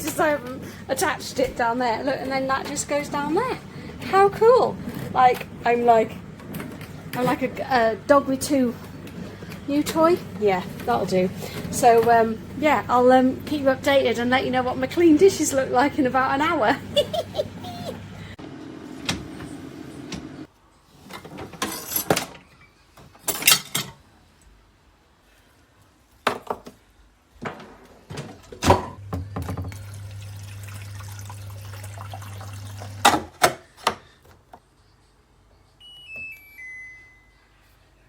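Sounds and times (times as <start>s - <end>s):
dishwasher motor hum: 0.0s - 20.5s, 28.7s - 33.3s
water splashes and knocks: 29.0s - 33.3s
electronic chime of beeps: 35.8s - 37.5s.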